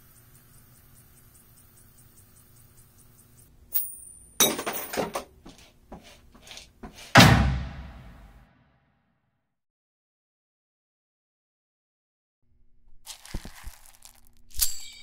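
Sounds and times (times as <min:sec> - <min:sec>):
knocks and rattles: 0:04.4 - 0:08.0
heavy deep thud: 0:07.1 - 0:08.4.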